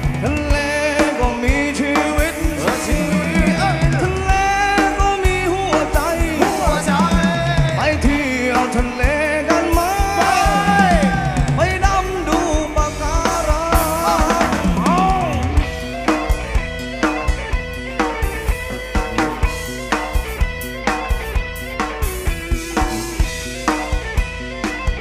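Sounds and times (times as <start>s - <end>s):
drum kit beat: 0.0s - 25.0s
lead instrument sliding melody: 14.0s - 21.0s.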